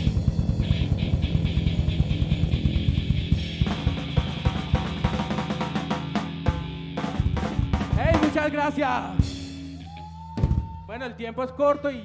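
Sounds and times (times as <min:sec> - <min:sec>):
drumming on bass drum and snare: 0:00.0 - 0:09.6
live punk rock band: 0:00.0 - 0:10.9
distorted guitar and bass: 0:00.0 - 0:12.0.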